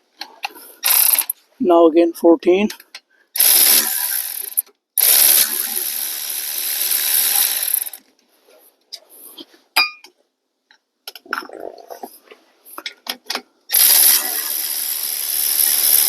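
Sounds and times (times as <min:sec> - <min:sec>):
metal parts clicking and knocking: 0:00.8 - 0:01.3, 0:02.7 - 0:04.7
power ratchet spinning bolts: 0:00.8 - 0:01.3, 0:03.4 - 0:08.0, 0:13.7 - 0:16.0.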